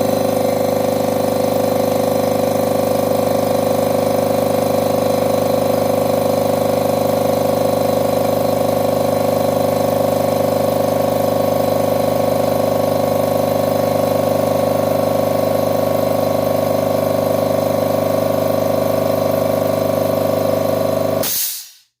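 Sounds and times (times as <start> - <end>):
air compressor humming: 0.0 - 21.9
short burst of noise: 21.2 - 22.0.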